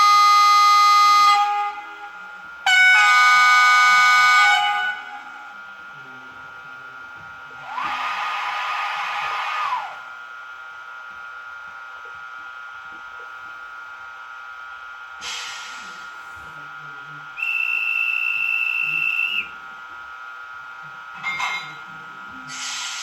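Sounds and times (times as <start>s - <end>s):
high-tone horn blast: 0.0s - 5.5s
air-release hiss: 15.2s - 16.2s, 22.5s - 23.0s
steady electronic whine: 16.5s - 22.5s.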